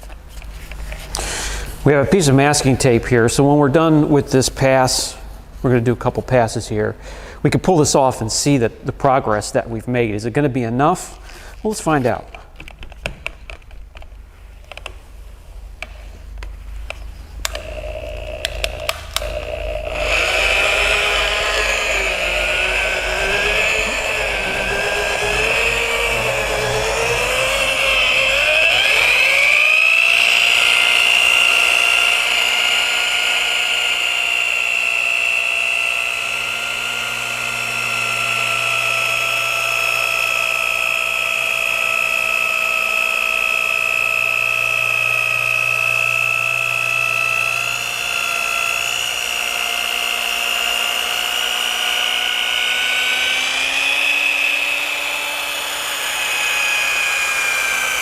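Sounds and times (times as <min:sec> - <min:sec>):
rotary polisher motor whine: 0:16.9 - 0:58.0.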